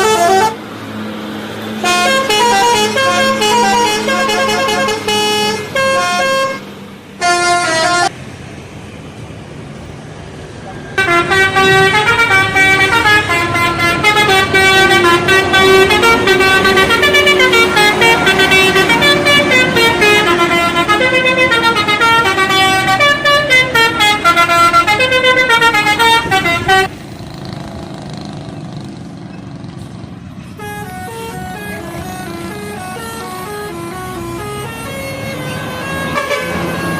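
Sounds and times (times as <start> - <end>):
air horns playing a melody: 0.0 - 0.6, 1.8 - 8.1, 11.0 - 26.9, 30.6 - 36.9
faint air horn melody: 0.0 - 0.6, 1.8 - 8.1, 11.0 - 26.9, 30.6 - 36.9.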